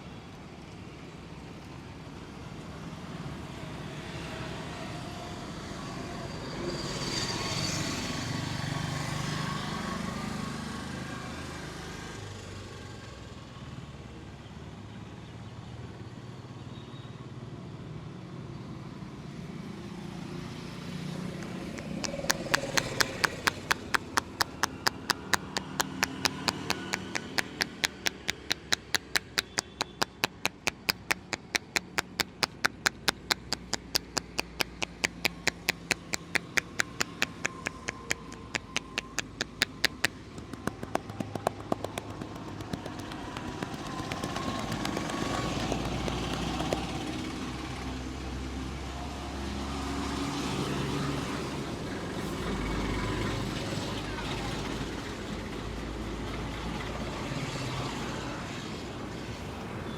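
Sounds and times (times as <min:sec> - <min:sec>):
low rumble of street traffic: 0:00.0 - 0:59.9
hand slaps of tapping massage: 0:21.4 - 0:47.0.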